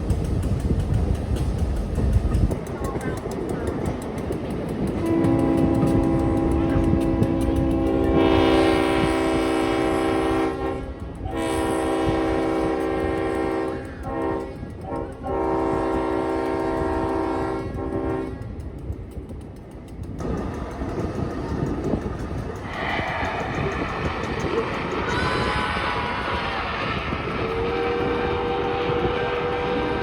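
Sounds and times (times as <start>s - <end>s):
train rumbling on rails: 0.0s - 30.0s
locomotive air horn: 5.0s - 18.4s, 25.0s - 30.0s.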